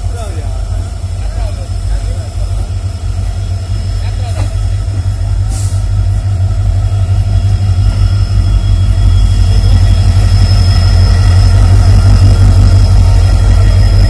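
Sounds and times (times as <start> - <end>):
diesel locomotive engine idling: 0.0 - 14.0
faint high whine: 7.0 - 14.0.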